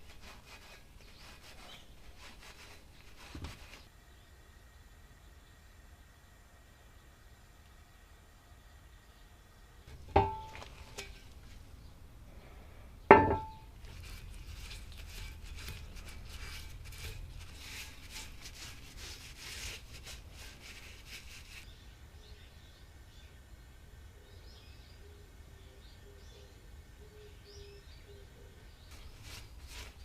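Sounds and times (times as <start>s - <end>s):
sharp metal knocks: 10.0s - 11.2s, 13.1s - 13.7s
rapid scraping: 13.3s - 21.7s, 28.9s - 30.0s.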